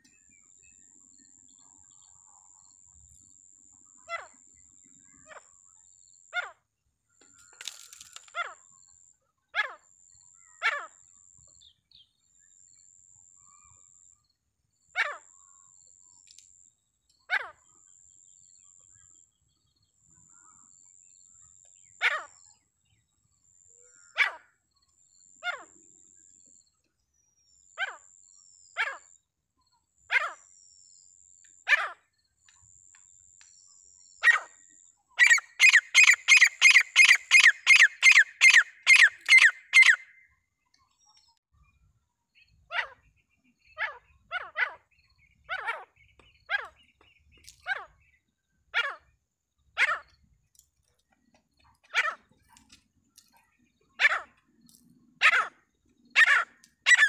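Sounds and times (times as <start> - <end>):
francolin calling: 35.2 - 40.2, 56.2 - 57.0.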